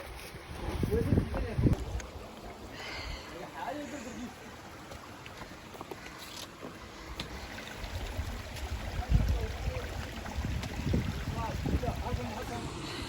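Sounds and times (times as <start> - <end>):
wind rumbling on microphone: 0.0 - 2.3, 7.6 - 13.0
water sloshing and splashing: 4.2 - 12.6.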